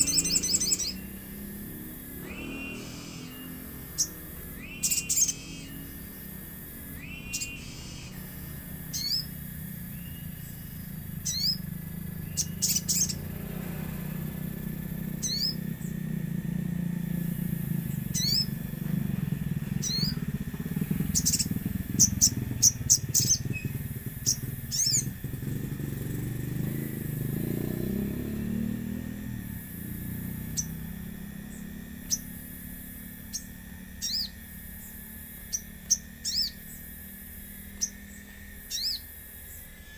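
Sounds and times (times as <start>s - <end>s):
birds chirping: 0.0s - 39.9s
steady low rumble: 3.0s - 25.9s.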